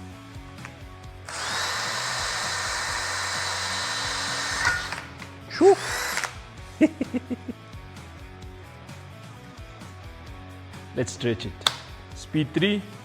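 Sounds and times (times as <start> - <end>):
plucked background music: 0.0 - 13.0
drill whining into metal plate: 1.3 - 6.5.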